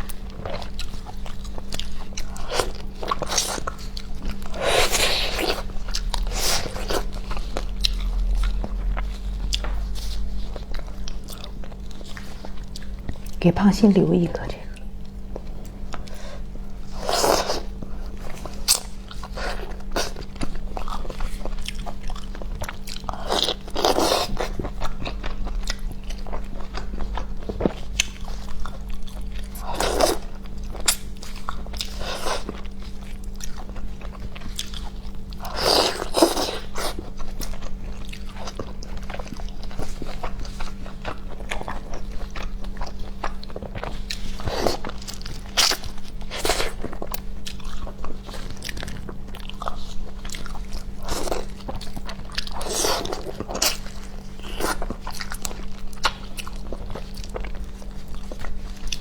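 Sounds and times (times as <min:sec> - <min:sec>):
person chewing and biting: 0:00.0 - 0:13.4, 0:15.0 - 0:59.0.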